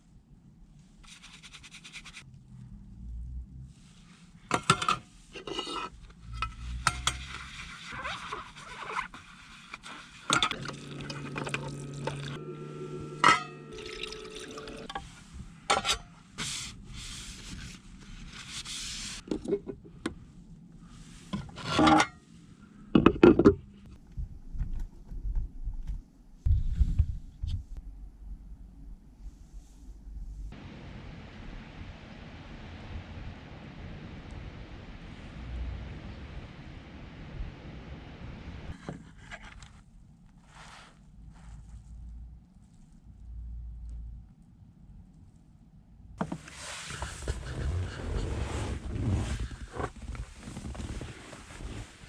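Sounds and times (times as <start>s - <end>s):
cookware clattering: 13.2s - 13.6s
liquid pouring into container: 13.7s - 14.9s.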